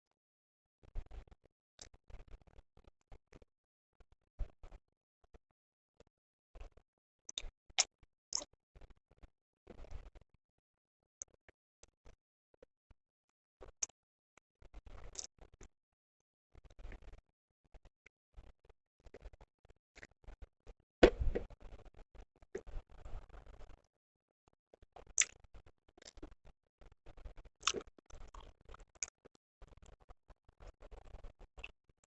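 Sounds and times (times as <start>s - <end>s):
person chewing food: 25.0s - 25.4s, 27.6s - 29.1s
person chewing: 27.6s - 28.4s
wet mouth clicks: 27.6s - 28.5s.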